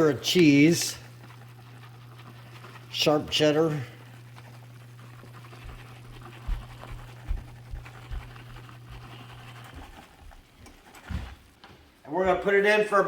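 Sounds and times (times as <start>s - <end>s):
steady low hum: 0.0s - 12.4s
dog panting: 4.0s - 11.0s.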